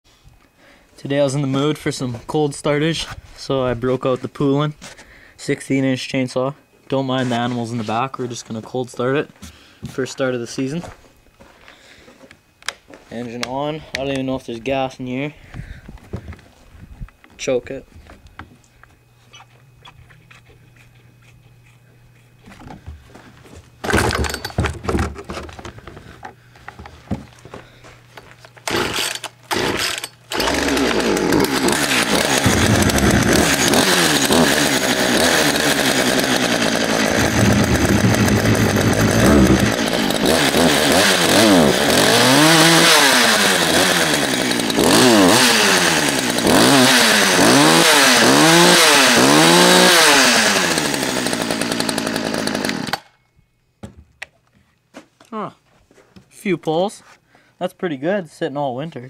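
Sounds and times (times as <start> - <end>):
chainsaw starter rope pulls: 23.9 - 25.8, 28.5 - 53.1
chainsaw engine running and revving: 28.7 - 53.0.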